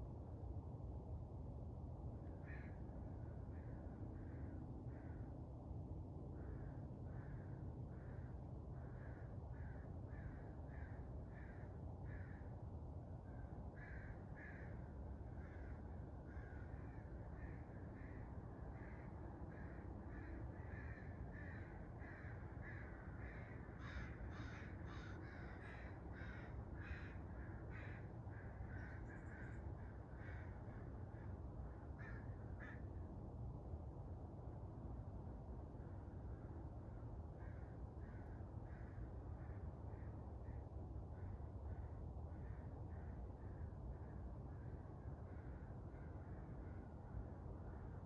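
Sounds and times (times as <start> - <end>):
low outdoor rumble: 0.0 - 48.0
crows cawing: 2.4 - 2.8, 6.4 - 12.4, 13.8 - 14.8, 15.4 - 18.2, 18.8 - 32.9, 37.4 - 40.0.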